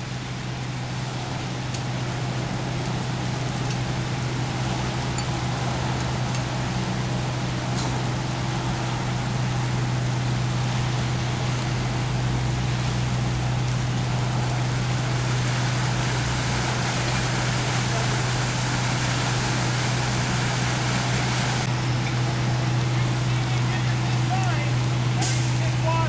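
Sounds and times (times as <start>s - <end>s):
fire engine motor droning: 0.0s - 26.0s
rushing hiss: 14.1s - 21.7s.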